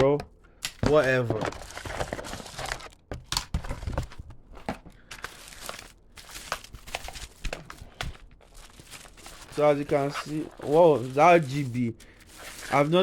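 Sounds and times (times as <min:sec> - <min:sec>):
packaging crinkling and rustling: 0:00.8 - 0:13.0.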